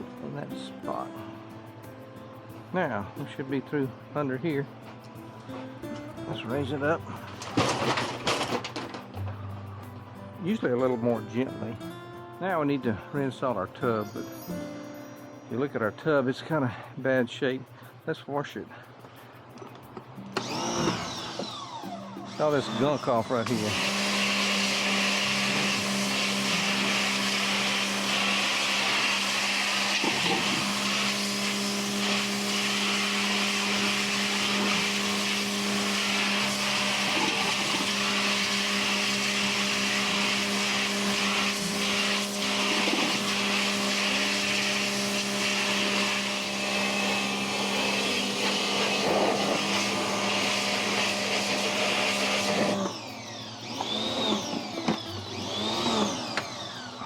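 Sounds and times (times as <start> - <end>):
pressure washer spraying: 6.4 - 9.2, 22.3 - 53.2.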